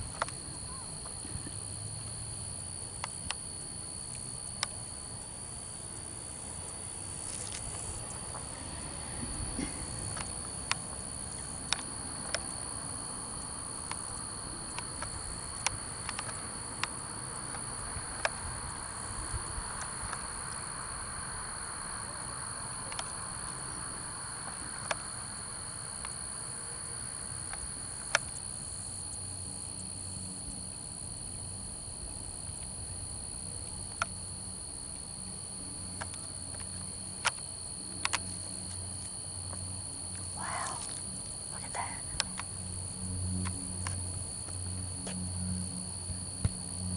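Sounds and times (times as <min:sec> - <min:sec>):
night insects chirping: 0:00.0 - 0:46.9
sharp clicks: 0:14.7 - 0:18.5.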